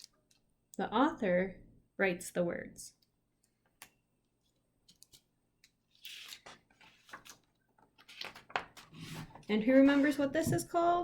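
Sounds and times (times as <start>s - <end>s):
book pages turning: 5.9s - 10.2s.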